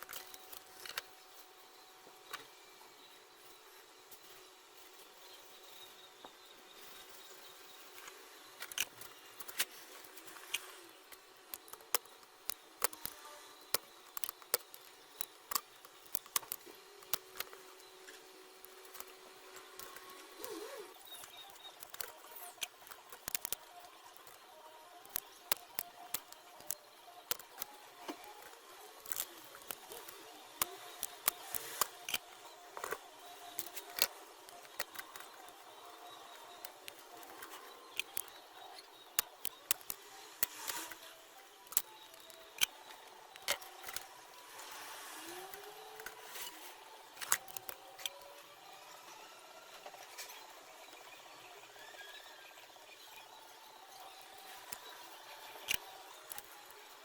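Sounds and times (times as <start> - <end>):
sharp clicks and light taps: 25.0 - 35.6.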